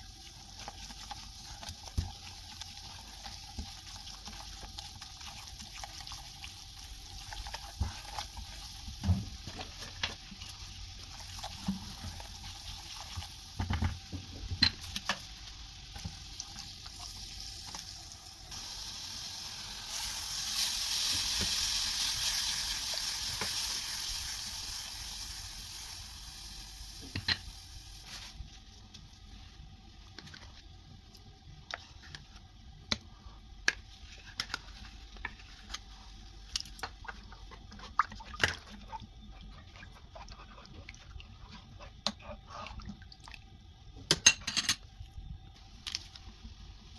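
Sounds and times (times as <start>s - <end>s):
hiss of frying: 0.0s - 30.0s
utensils clinking on cookware: 44.1s - 44.8s.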